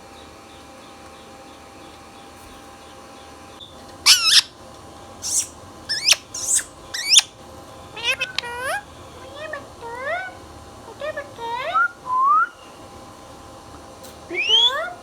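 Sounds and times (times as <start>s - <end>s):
parrot high-pitched calls: 4.0s - 4.6s, 5.2s - 12.7s, 14.3s - 15.0s.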